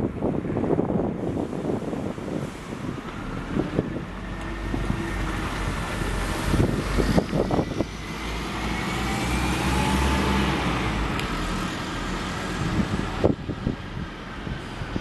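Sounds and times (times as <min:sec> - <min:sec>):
wind buffeting microphone: 0:00.0 - 0:15.0
vehicle passing: 0:03.5 - 0:13.3.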